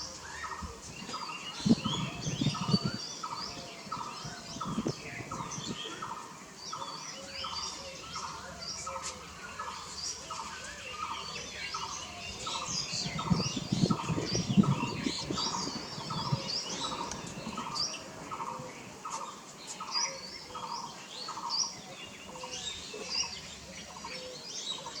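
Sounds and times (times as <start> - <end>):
birds calling repeated notes: 0.0 - 25.0.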